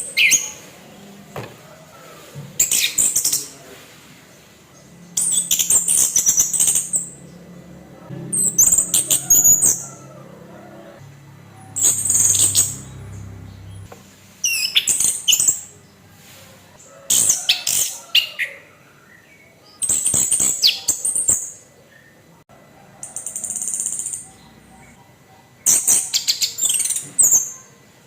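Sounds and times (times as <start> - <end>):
buzzy rattling bird phrase: 2.6 - 16.1.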